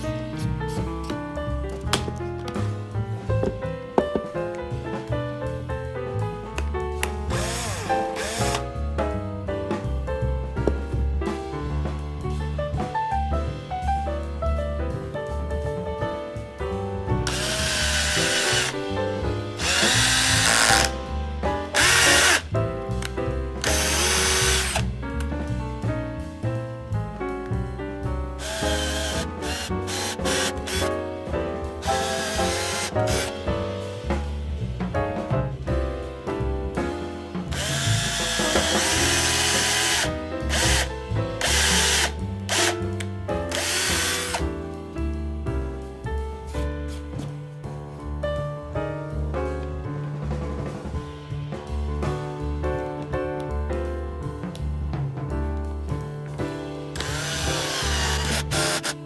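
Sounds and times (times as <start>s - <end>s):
background music: 0.0s - 59.0s
electric drill bursts: 7.3s - 8.6s, 17.3s - 18.8s, 19.6s - 20.9s, 21.8s - 22.4s, 23.6s - 24.8s, 28.4s - 30.8s, 31.8s - 33.3s, 37.5s - 42.8s, 43.5s - 44.4s, 57.0s - 59.0s.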